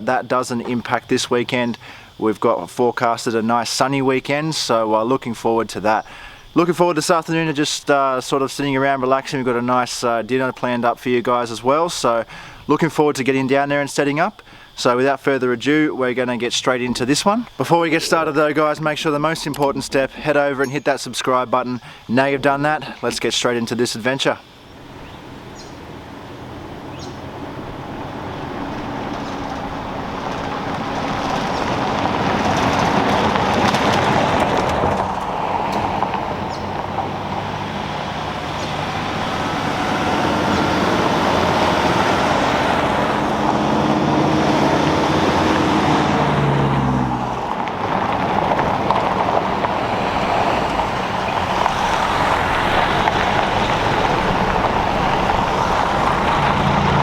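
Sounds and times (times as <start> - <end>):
road noise: 0.0 - 57.0
vehicle engine: 24.6 - 57.0.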